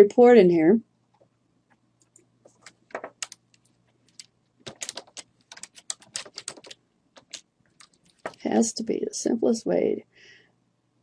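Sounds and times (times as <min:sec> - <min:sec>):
typing on computer keyboard: 0:02.0 - 0:08.4.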